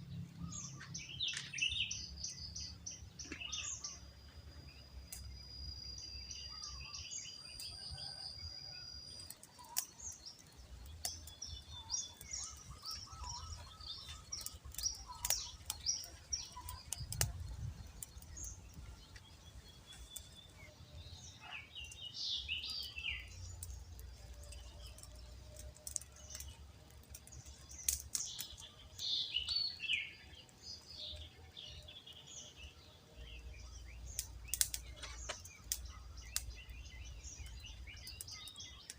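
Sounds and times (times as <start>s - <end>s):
birds chirping and calling: 0.3s - 4.1s, 6.0s - 38.9s.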